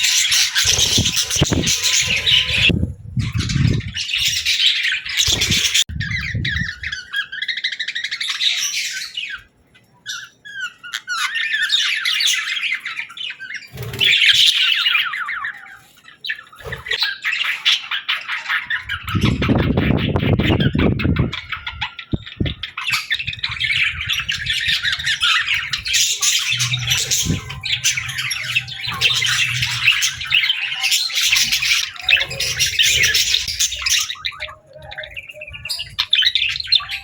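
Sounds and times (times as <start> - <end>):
low rumble: 23.2 - 30.5.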